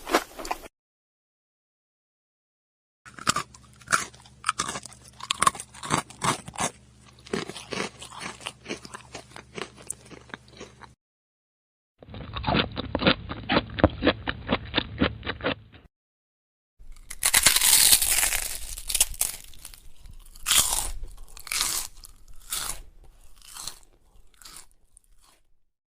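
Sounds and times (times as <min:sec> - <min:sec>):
chewing crunches: 0:03.1 - 0:11.0, 0:12.0 - 0:15.8, 0:16.8 - 0:25.5
crunchy biting: 0:03.1 - 0:11.0, 0:12.0 - 0:15.9, 0:16.8 - 0:25.5.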